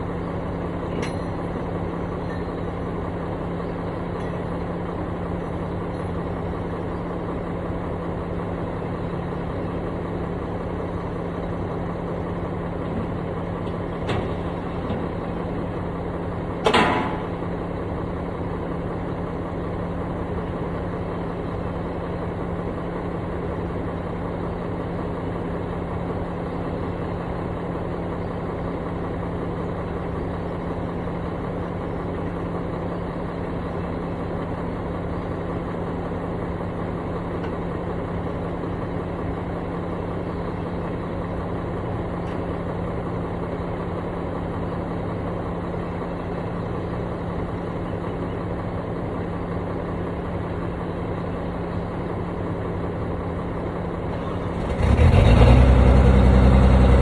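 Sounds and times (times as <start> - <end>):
construction machine engine idling: 0.0 - 57.0.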